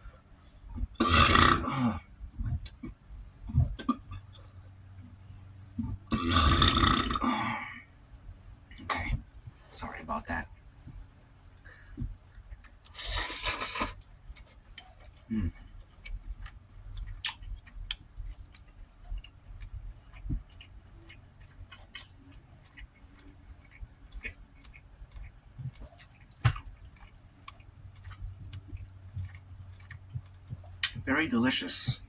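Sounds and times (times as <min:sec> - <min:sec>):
person chewing food: 0:10.9 - 0:31.1.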